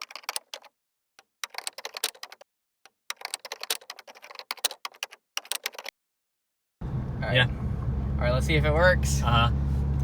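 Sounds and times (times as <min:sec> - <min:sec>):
keyboard typing clicks: 0:00.0 - 0:05.9.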